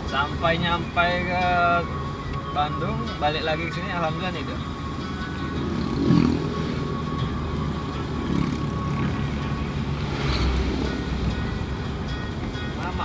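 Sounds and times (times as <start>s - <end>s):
vehicle rumble from inside cabin: 0.0s - 13.0s.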